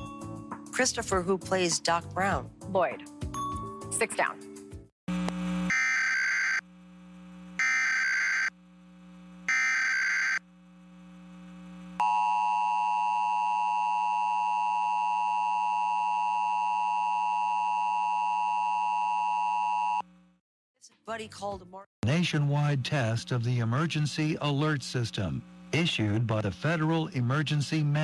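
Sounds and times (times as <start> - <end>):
screeching digital data tones: 9.5 - 10.4.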